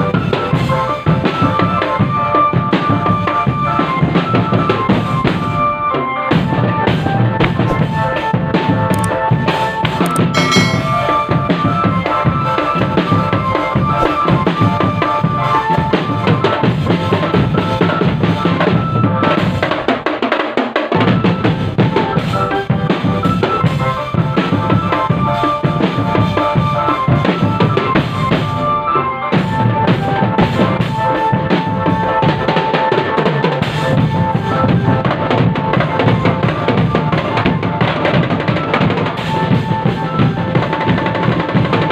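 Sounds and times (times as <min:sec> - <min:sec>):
sustained melody notes: 0:10.3 - 0:12.8.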